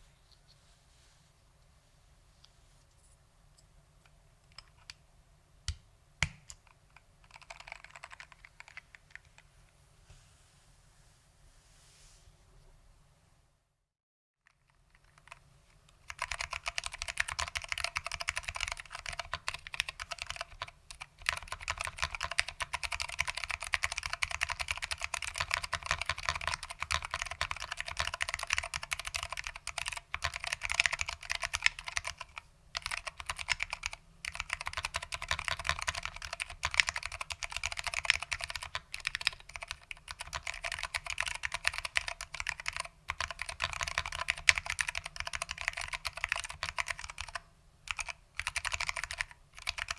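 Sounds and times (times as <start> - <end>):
fast keyboard typing: 6.2 - 9.4, 14.8 - 15.4, 16.0 - 49.9.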